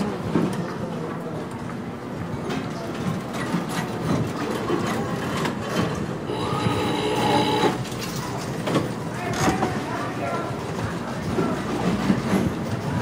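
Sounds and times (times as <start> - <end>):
electronic slot machine tones: 6.3 - 7.8.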